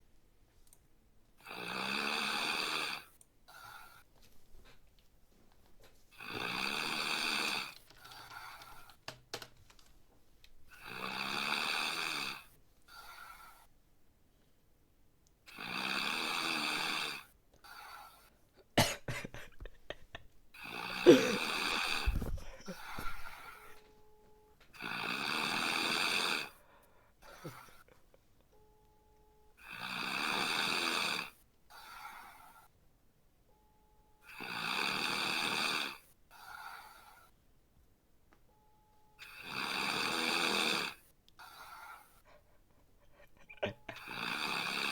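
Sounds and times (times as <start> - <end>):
person snoring: 1.4 - 4.0, 6.2 - 8.9, 10.8 - 13.6, 15.5 - 23.9, 24.8 - 28.0, 29.6 - 32.7, 34.3 - 37.3, 39.2 - 44.9.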